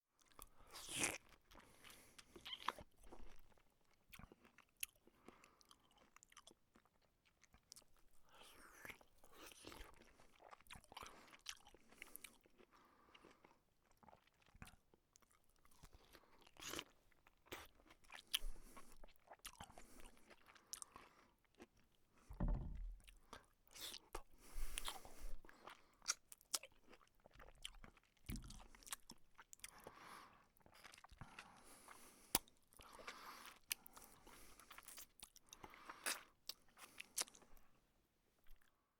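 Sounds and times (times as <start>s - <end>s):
person chewing and smacking: 0.2s - 37.8s.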